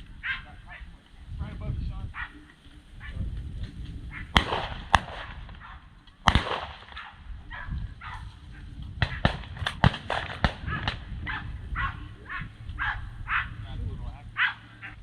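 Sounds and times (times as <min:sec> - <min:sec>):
shotgun shots echoing: 0:04.3 - 0:07.2, 0:09.0 - 0:11.1.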